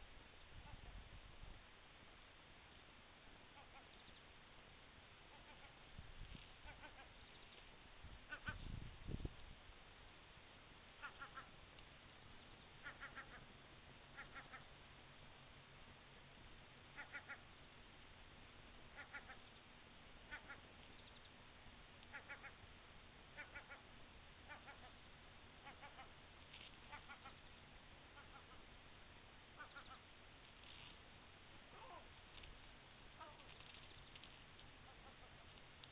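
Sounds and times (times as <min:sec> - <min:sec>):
steady background hiss: 0:00.0 - 0:35.9
faint bird calls: 0:03.4 - 0:04.3, 0:05.2 - 0:09.2, 0:11.0 - 0:14.8, 0:16.9 - 0:17.6, 0:18.9 - 0:21.4, 0:22.0 - 0:22.6, 0:23.3 - 0:28.7, 0:29.5 - 0:31.0, 0:31.7 - 0:35.9.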